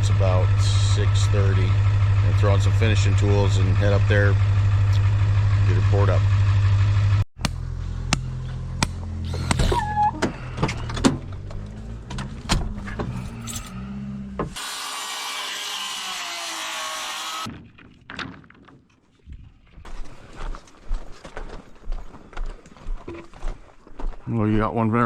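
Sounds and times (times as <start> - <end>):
truck engine idling: 0.0 - 14.4
tools clanking: 9.3 - 13.8.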